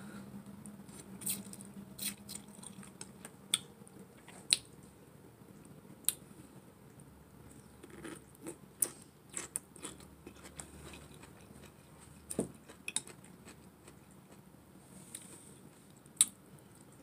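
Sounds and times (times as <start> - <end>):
chewing noodles: 1.2 - 3.6.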